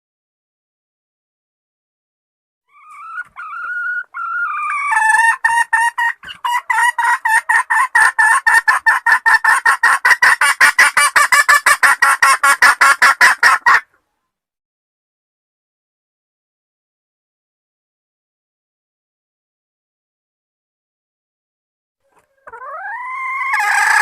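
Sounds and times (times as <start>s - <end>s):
hen clucking: 2.7s - 14.0s, 22.0s - 24.0s.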